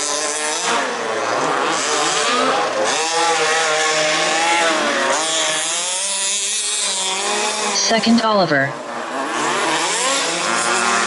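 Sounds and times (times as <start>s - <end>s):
rc car engines buzzing: 0.0s - 7.8s, 8.8s - 11.0s.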